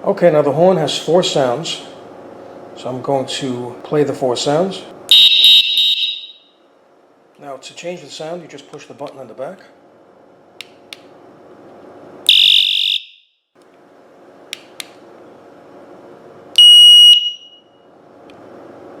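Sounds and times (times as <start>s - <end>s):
high-pitched beep: 5.1s - 6.4s
harsh buzzing horn blast: 5.1s - 6.5s, 12.3s - 13.1s
sharp clicks: 14.5s - 15.0s.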